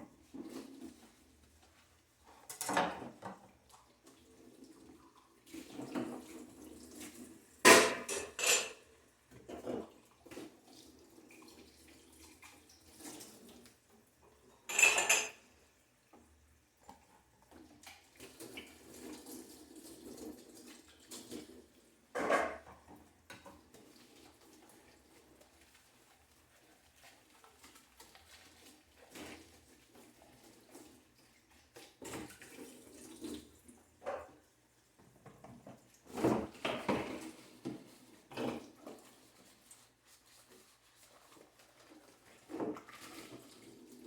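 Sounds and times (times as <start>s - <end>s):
dishes and cutlery clattering: 2.5s - 3.4s, 7.7s - 8.8s, 14.6s - 15.4s, 22.2s - 22.8s.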